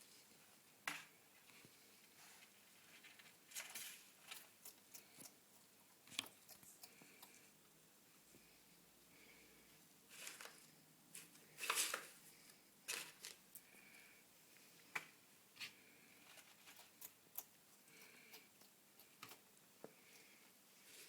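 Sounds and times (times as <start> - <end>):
lizard crunching on a mealworm: 3.1 - 7.5, 16.3 - 19.5.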